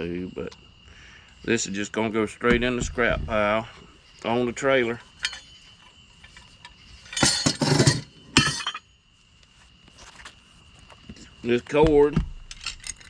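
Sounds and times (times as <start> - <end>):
scrap metal clinking: 2.5 - 9.0, 12.4 - 13.0.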